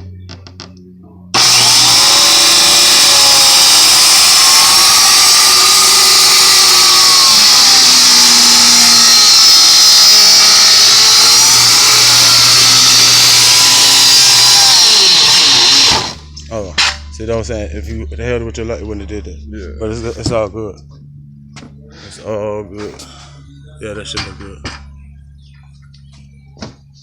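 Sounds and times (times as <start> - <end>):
power saw cutting wood: 1.4 - 17.0.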